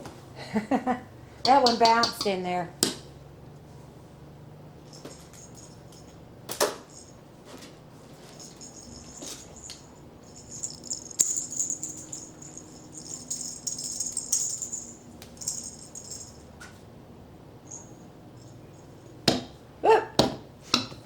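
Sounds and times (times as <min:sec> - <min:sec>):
toy jingling: 0:04.8 - 0:06.2, 0:06.8 - 0:07.2, 0:08.2 - 0:16.5, 0:17.7 - 0:18.9.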